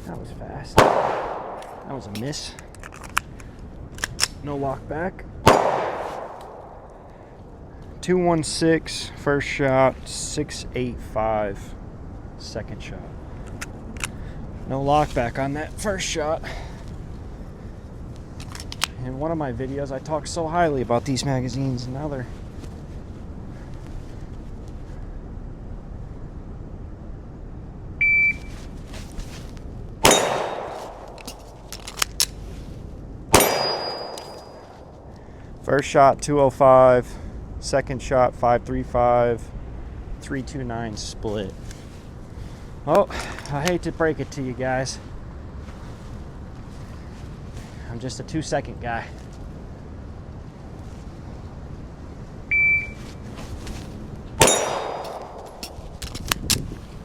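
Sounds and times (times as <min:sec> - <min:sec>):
pistol shots: 0:00.8 - 0:01.9, 0:05.4 - 0:07.1, 0:30.0 - 0:31.7, 0:33.3 - 0:35.0, 0:54.4 - 0:56.0
shot timer beep: 0:52.5 - 0:53.0.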